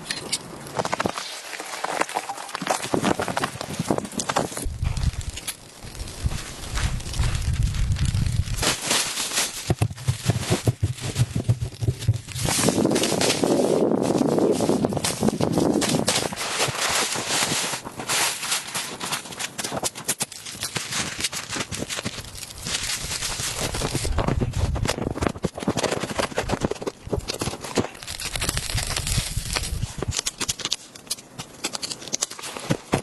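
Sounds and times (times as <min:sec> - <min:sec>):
sharp crackles and clicks: 0:00.0 - 0:33.0
blizzard wind gusting: 0:02.8 - 0:19.0, 0:22.2 - 0:27.3, 0:27.9 - 0:30.2
wind buffeting microphone: 0:03.0 - 0:08.6, 0:09.9 - 0:16.4, 0:22.5 - 0:25.4.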